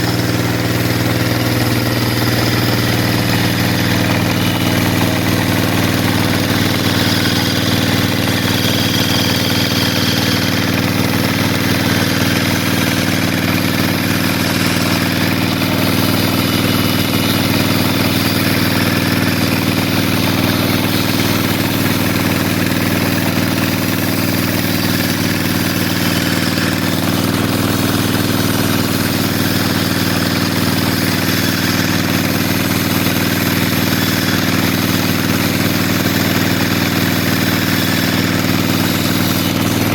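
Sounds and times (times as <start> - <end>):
sawmill saw machinery humming: 0.0 - 39.9.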